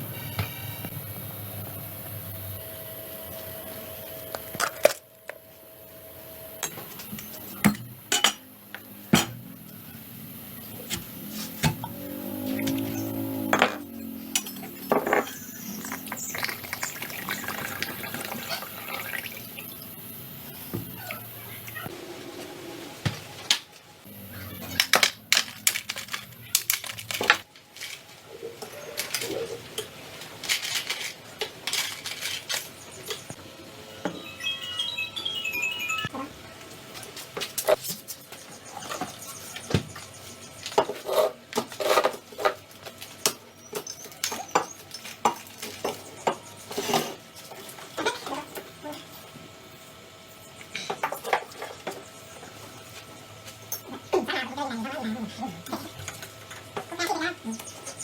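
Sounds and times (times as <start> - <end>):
metal and plastic parts clinking: 24.7 - 28.0, 30.4 - 32.7.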